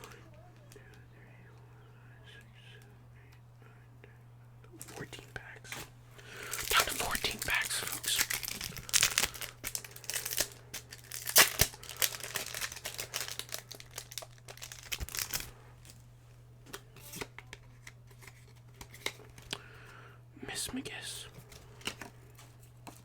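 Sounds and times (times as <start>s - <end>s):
foil wrapper crinkling and tearing: 6.2s - 16.0s.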